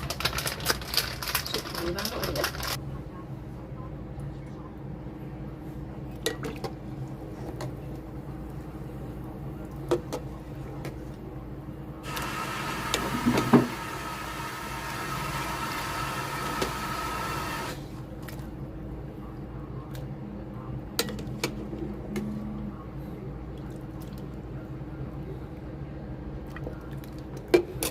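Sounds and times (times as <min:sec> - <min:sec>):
water running: 0:12.0 - 0:17.8
steady low hum: 0:17.8 - 0:27.9.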